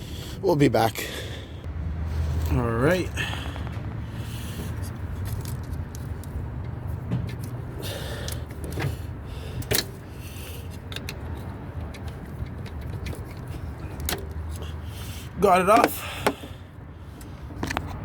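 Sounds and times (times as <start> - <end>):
steady low hum: 1.2 - 10.6.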